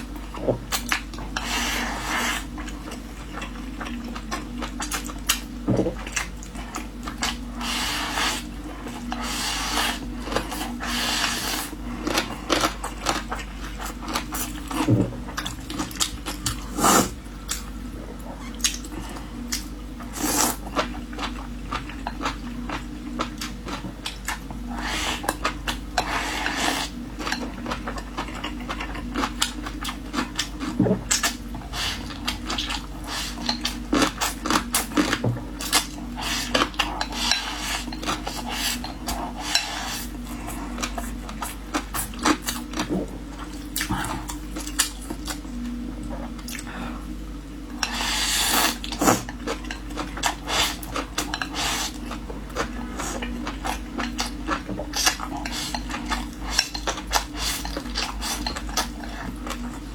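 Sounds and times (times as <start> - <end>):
steady low hum: 0.0 - 59.9
noodle slurping: 16.6 - 17.2
utensils scraping a bowl: 36.1 - 40.3.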